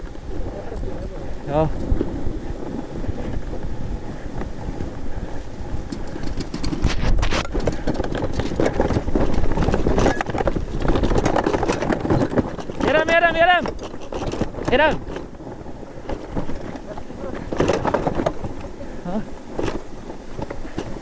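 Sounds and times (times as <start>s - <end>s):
sled skis hissing over snow: 0.0s - 13.7s, 14.5s - 21.0s
wind rumble on microphone: 0.0s - 21.0s
sled knocking over bumps: 5.9s - 21.0s.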